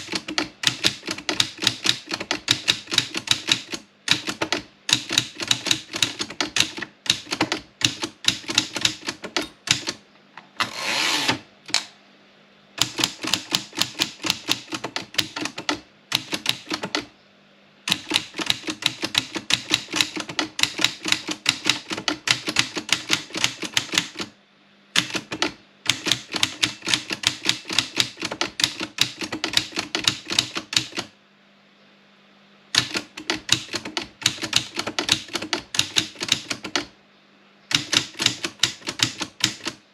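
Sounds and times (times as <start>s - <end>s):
typewriter carriage return rasp: 0.0s - 10.0s, 10.6s - 11.5s, 12.8s - 17.1s, 17.9s - 24.3s, 25.0s - 31.1s, 32.8s - 36.9s, 37.7s - 39.8s
typewriter key strikes: 0.0s - 10.0s, 12.8s - 17.1s, 17.9s - 24.3s, 25.0s - 31.1s, 32.8s - 36.9s, 37.7s - 39.8s.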